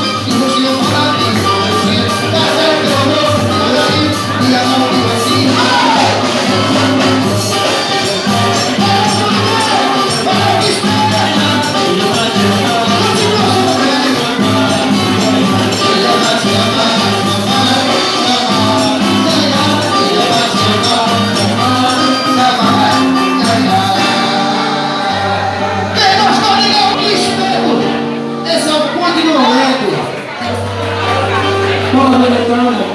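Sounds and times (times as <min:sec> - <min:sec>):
tambourine and shakers: 0:00.0 - 0:24.6
bass line: 0:00.0 - 0:32.9
live band music: 0:00.0 - 0:32.9.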